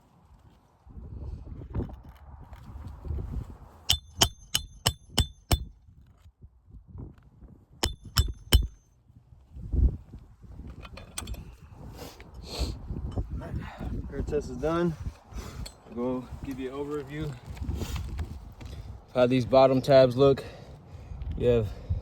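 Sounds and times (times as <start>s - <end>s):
hammer ringing on metal: 3.9s - 5.7s, 7.8s - 8.8s.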